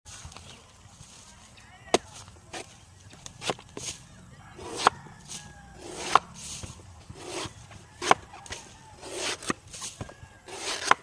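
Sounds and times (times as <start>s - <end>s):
machete chopping coconut: 1.9s - 4.0s, 4.6s - 11.0s.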